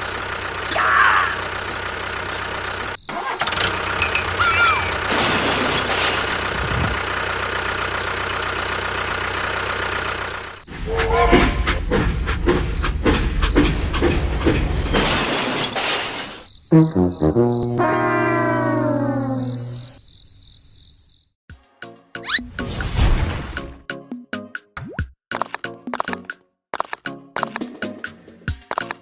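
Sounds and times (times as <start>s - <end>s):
vehicle engine running: 0.0s - 15.2s.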